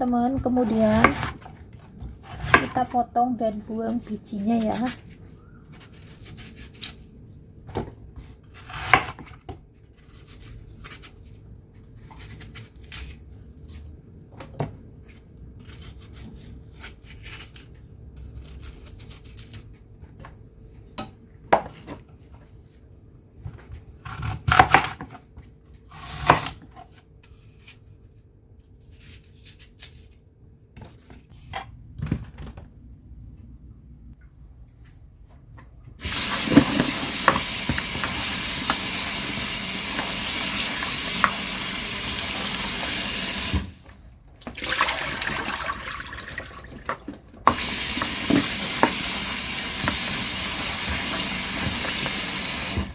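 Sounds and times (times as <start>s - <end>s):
knife cutting on cutting board: 0.4s - 2.8s.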